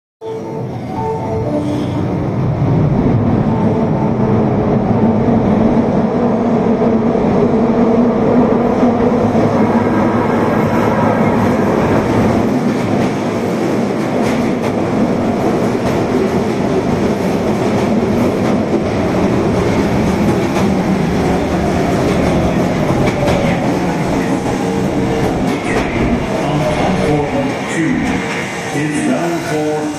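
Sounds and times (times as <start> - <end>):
subway train rumbling: 0.2 - 29.9.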